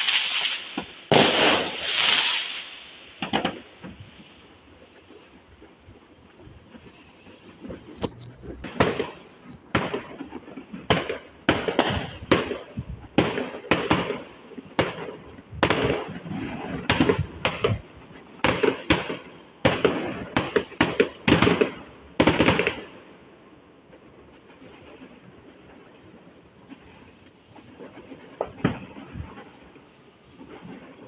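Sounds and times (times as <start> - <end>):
fireworks banging: 0.0 - 4.2, 8.0 - 10.4.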